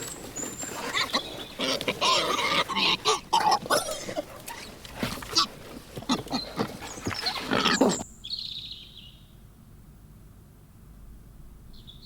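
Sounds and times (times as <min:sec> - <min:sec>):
animal rough cries: 0:00.0 - 0:08.0.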